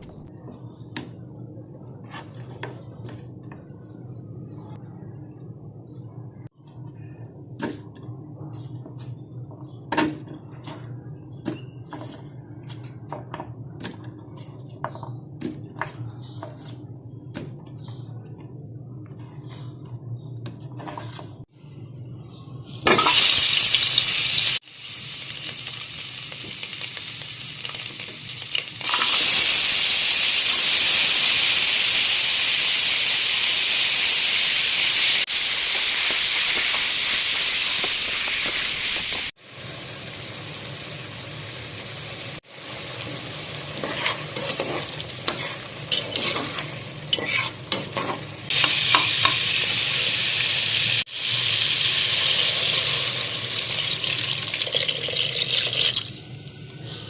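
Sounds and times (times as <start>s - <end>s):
food sizzling in a pan: 22.8s - 56.1s
utensil scraping a pan: 43.8s - 49.4s.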